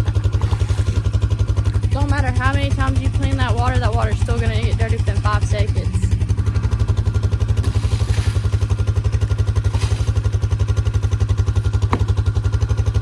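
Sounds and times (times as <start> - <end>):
small engine running: 0.0 - 13.0.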